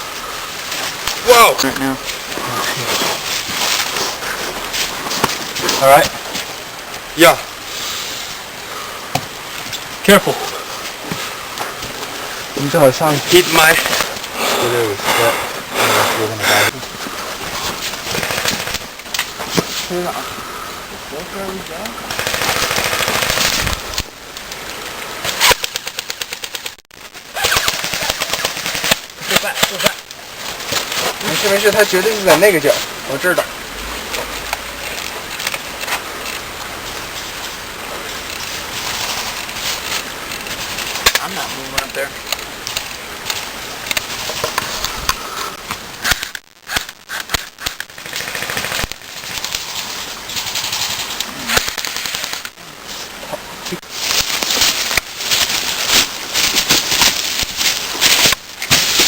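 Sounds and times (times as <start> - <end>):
airsoft guns firing full-auto: 18.1 - 18.8, 22.1 - 23.6
airsoft guns firing bursts: 18.1 - 18.9, 22.1 - 23.7, 27.4 - 29.8, 48.1 - 48.9.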